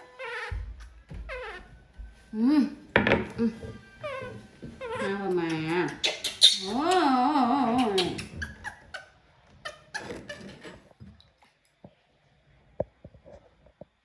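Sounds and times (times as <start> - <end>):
baby monkey whimpering: 0.0 - 1.7, 4.0 - 10.8.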